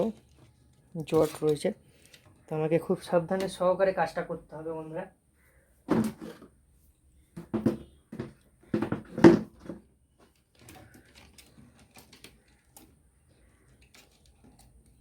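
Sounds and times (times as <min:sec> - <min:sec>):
hard plastic knocks and clunks: 0:07.4 - 0:09.8.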